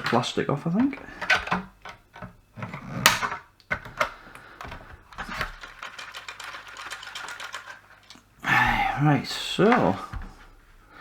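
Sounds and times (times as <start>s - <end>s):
plastic cracking and snapping: 0.0s - 8.3s
handling noise: 0.0s - 11.0s.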